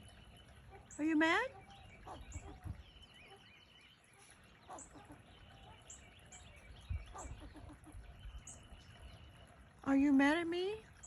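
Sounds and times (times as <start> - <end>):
small birds chirping: 0.0 - 11.0
squirrel barking: 0.6 - 3.6, 4.2 - 6.0, 7.0 - 8.2.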